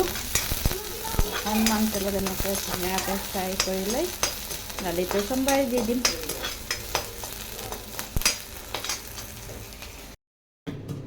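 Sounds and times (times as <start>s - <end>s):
utensil scraping a pan: 0.0s - 3.0s
onion and garlic sizzling in oil: 0.0s - 10.2s.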